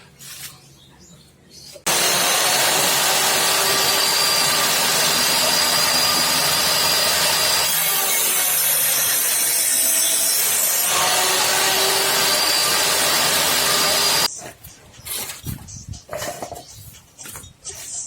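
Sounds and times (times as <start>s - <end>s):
power tool rasping on wood: 1.9s - 14.3s.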